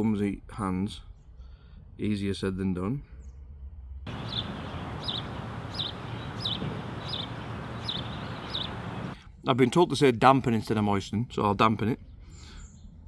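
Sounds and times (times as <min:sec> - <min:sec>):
bird high falling chirp: 0:04.1 - 0:09.2
steady background hiss: 0:04.1 - 0:09.2.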